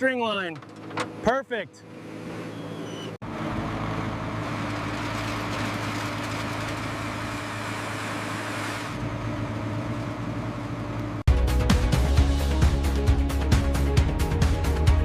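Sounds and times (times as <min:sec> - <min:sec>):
heavy machine engine running: 0:03.2 - 0:11.3.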